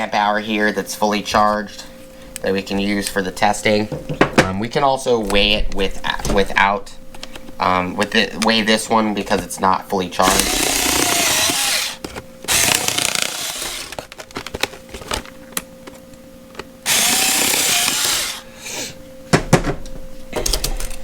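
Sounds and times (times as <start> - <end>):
power tool cutting plastic: 10.2 - 14.2, 16.8 - 18.5.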